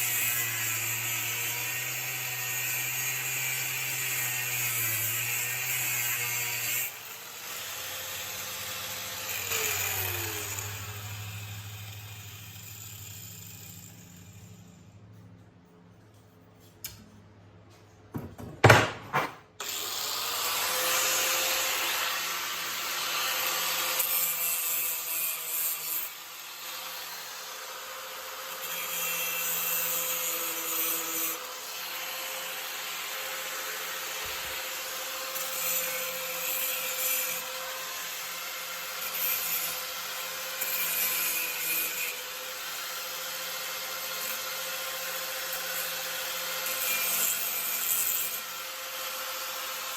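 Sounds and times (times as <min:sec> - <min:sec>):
power tool grinding steel: 0:00.0 - 0:14.8, 0:19.6 - 0:49.9
sharp knocks: 0:18.1 - 0:19.4.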